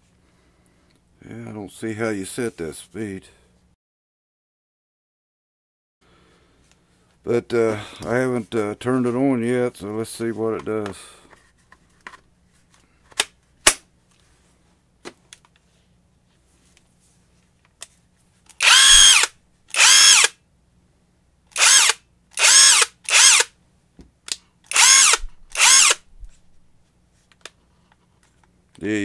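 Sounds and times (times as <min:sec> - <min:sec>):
impact wrench motor whine: 0:18.6 - 0:20.4, 0:21.5 - 0:23.5, 0:24.7 - 0:26.0.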